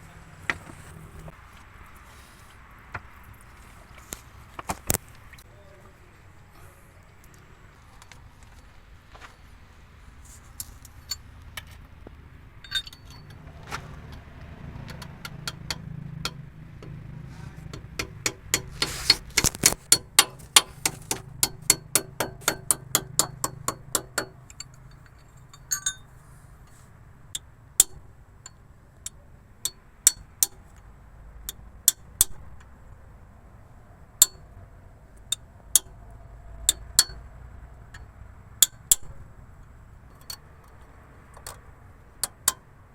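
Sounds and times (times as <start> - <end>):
metal tools clinking on metal: 12.6 - 13.5, 17.6 - 26.2.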